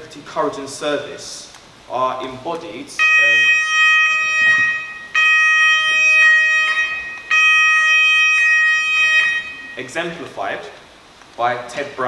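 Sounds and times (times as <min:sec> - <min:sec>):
electronic alarm buzzer tone: 0:03.0 - 0:09.9.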